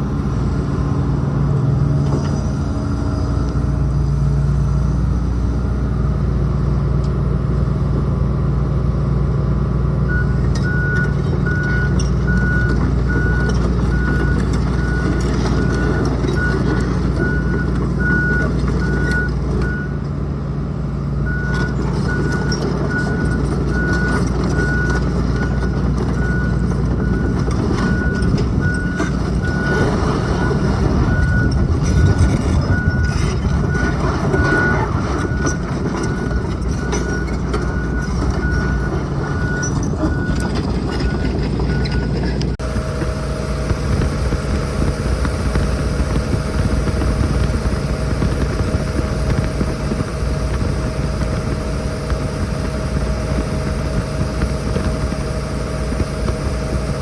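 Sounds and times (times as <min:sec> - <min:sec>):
diesel engine running: 0:00.0 - 0:57.0
travel alarm beeping: 0:26.2 - 0:42.2.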